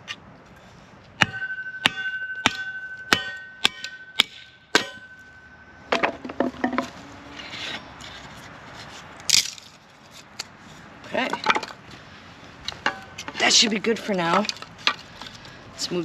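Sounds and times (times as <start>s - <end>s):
hammer striking metal ringing: 1.2s - 6.2s
wood cracking: 9.2s - 9.8s.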